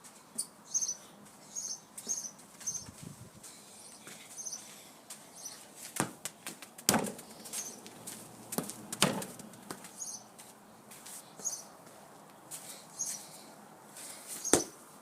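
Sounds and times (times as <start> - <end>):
football being kicked and bouncing: 6.0 - 7.4, 8.5 - 9.9, 14.5 - 14.8.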